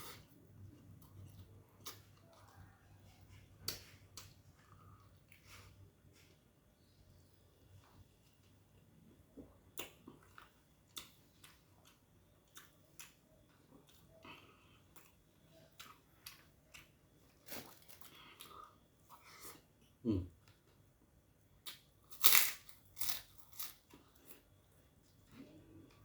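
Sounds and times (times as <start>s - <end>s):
person chewing with wet clicks: 0.0s - 5.6s, 7.8s - 19.5s.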